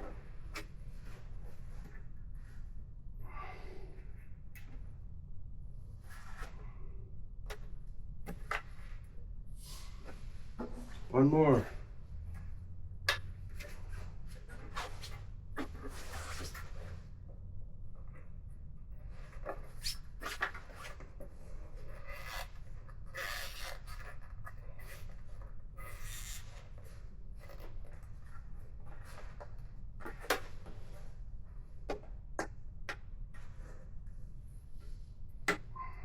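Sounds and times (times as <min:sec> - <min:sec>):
steady low hum: 0:00.0 - 0:23.1
rubber rubbing and scraping: 0:14.5 - 0:17.0.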